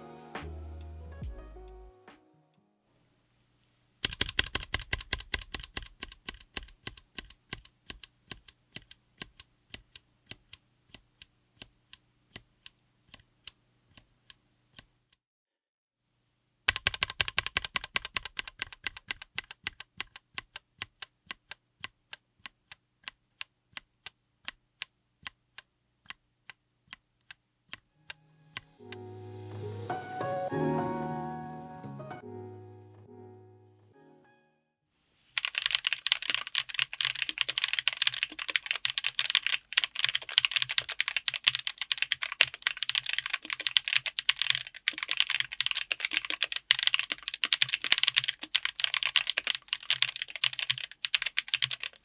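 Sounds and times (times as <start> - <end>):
typing on mechanical keyboard: 4.0 - 14.9, 16.7 - 27.8, 35.4 - 52.0.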